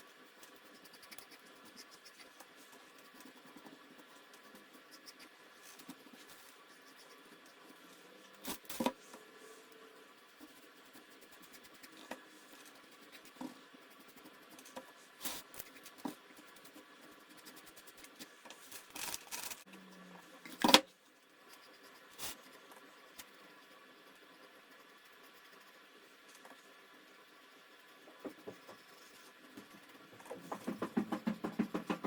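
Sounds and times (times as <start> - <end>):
brush scratching: 0.0 - 19.6, 21.2 - 30.9
knocks and taps: 30.2 - 32.0.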